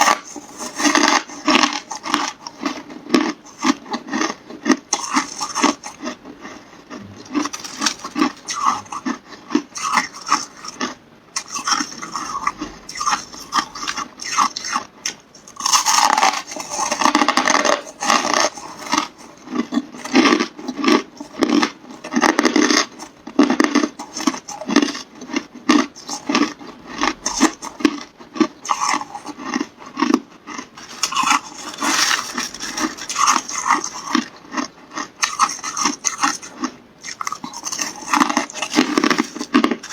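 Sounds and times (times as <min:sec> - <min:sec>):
ice being crunched: 0:07.4 - 0:09.0, 0:30.8 - 0:34.3.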